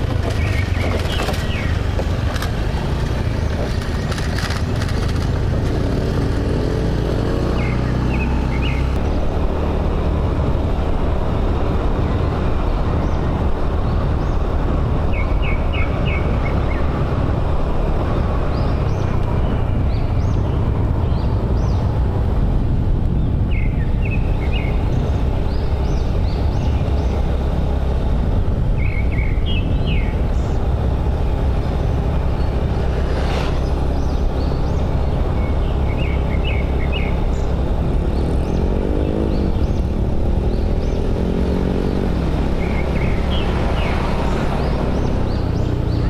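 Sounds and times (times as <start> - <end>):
birds chirping: 0.0 - 9.2, 11.8 - 22.3, 23.1 - 46.0
motorbike engine running: 0.0 - 22.2
wind rushing over microphone: 0.0 - 46.0.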